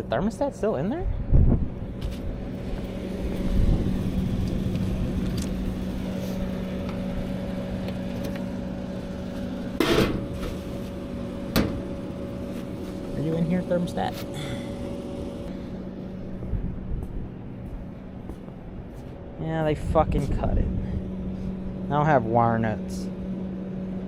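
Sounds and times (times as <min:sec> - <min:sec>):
steady machine hum: 0:00.0 - 0:24.0.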